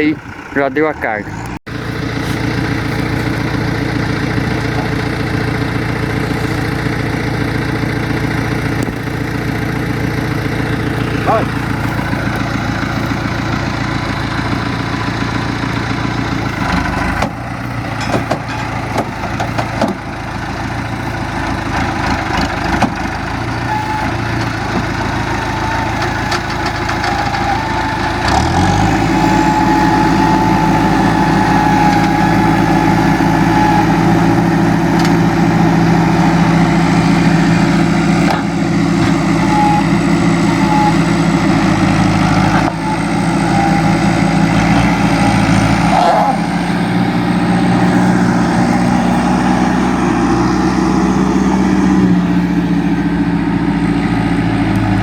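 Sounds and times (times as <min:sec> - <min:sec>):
diesel engine running: 0:00.0 - 0:55.0
knocks and rattles: 0:14.6 - 0:29.3.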